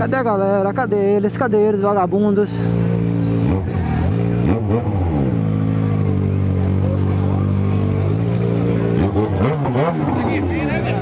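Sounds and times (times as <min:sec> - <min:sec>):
motorcycle engine revving: 0:00.0 - 0:11.0.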